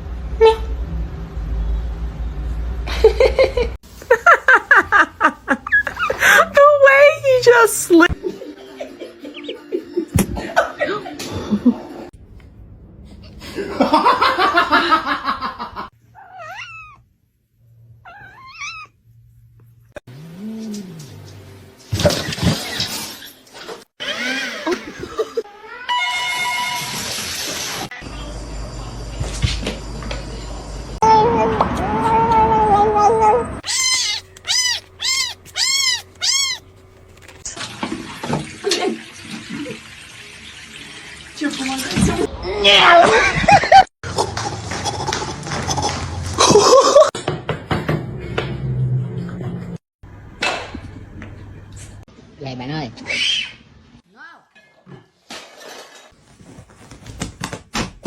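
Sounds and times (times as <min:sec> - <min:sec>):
cat meowing: 0:16.1 - 0:17.0, 0:18.0 - 0:19.0, 0:33.6 - 0:36.7.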